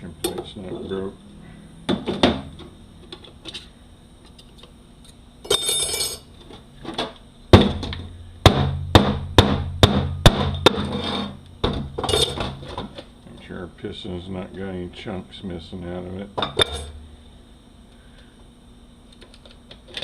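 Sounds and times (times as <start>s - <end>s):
low hum: 7.2s - 19.1s
sharp metal knocks: 7.5s - 10.9s.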